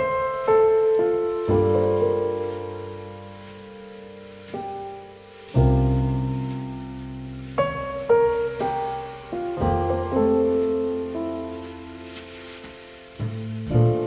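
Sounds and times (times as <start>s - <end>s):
piano music through speakers: 0.0s - 14.0s
deep bass chords: 13.2s - 14.0s.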